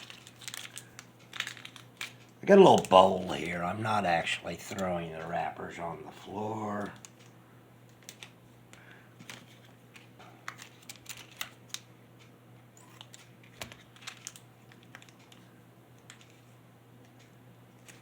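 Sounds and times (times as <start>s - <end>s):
plastic packets crinkling: 0.0s - 5.6s, 6.3s - 11.9s, 12.8s - 15.5s
steady low hum: 0.0s - 18.0s.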